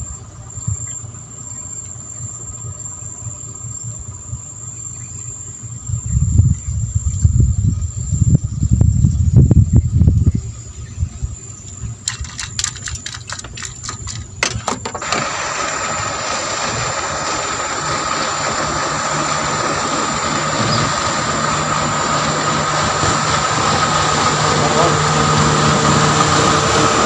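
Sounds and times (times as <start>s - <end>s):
engine running: 10.6s - 27.0s
sharp clicks and knocks: 12.0s - 15.3s.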